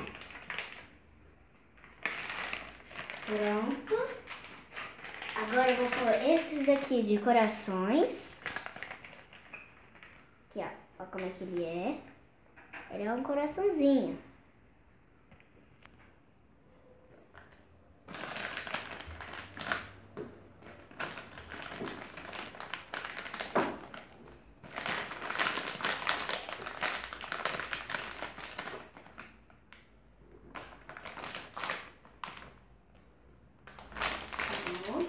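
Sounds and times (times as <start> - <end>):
plastic packet crinkling: 0.0 - 1.0, 1.7 - 10.3, 17.3 - 32.6, 33.6 - 35.0.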